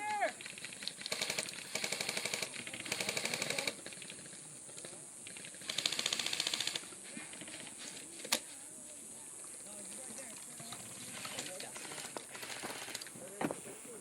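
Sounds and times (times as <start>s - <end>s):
airsoft guns firing bursts: 0.3s - 7.6s, 10.8s - 13.1s.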